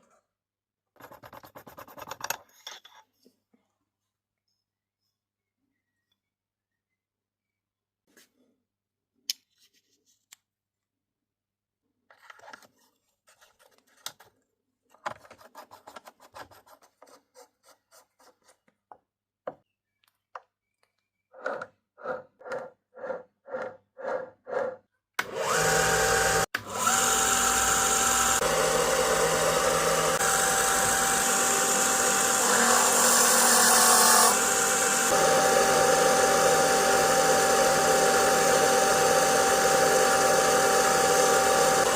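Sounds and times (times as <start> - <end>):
motor whining: 25.2 - 41.9.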